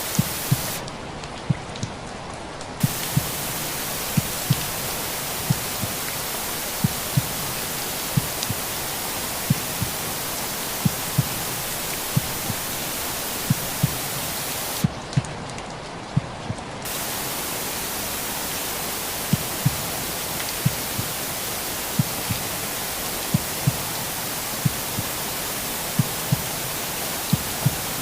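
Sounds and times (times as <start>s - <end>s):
heartbeat thumps: 0.0s - 0.8s, 2.8s - 15.0s, 19.3s - 19.9s, 20.6s - 21.1s, 22.0s - 22.5s, 23.3s - 24.0s, 24.6s - 25.1s, 26.0s - 26.5s, 27.3s - 27.9s
white noise hiss: 0.0s - 1.3s, 2.4s - 16.1s, 16.8s - 28.0s.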